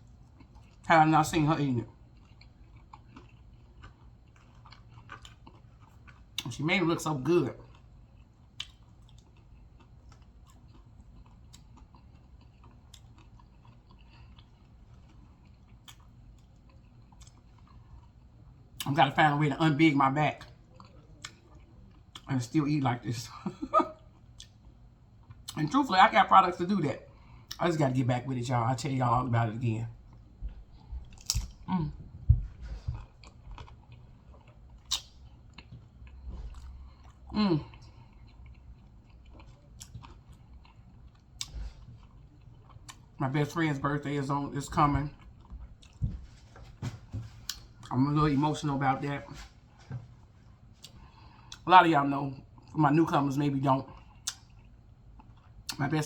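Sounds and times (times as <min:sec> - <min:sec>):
chewing crunchy chips: 0:00.0 - 0:06.6, 0:07.2 - 0:19.0, 0:20.4 - 0:22.3, 0:30.0 - 0:43.4, 0:53.8 - 0:55.8
wet mouth clicks chewing: 0:30.8 - 0:31.7, 0:32.9 - 0:43.0, 0:54.0 - 0:55.8.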